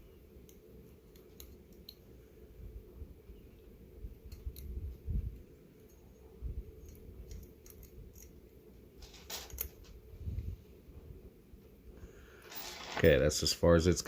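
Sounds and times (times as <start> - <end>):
metal scrape: 12.4 - 13.1.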